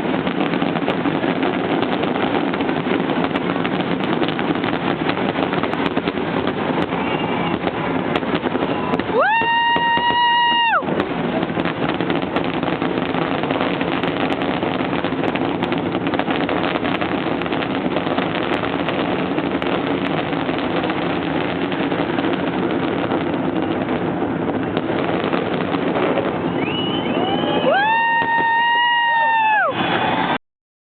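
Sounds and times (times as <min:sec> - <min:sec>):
fireworks crackling: 0:00.0 - 0:30.4
boat horns: 0:06.7 - 0:07.8.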